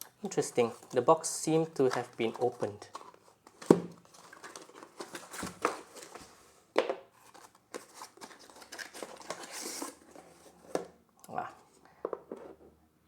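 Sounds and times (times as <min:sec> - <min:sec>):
wrapping rustling and crinkling: 0:00.2 - 0:10.7.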